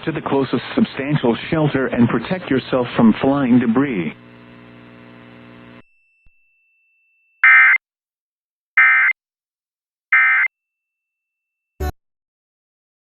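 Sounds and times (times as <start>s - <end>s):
faint electronic buzz: 3.1s - 5.9s.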